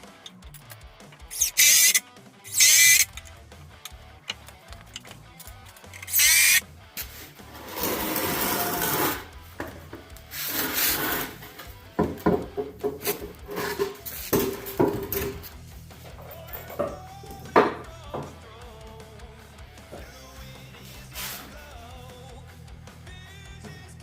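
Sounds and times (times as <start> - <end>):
scraping strokes on wood: 6.0 - 9.3, 10.3 - 11.6, 12.8 - 15.3, 20.8 - 21.6.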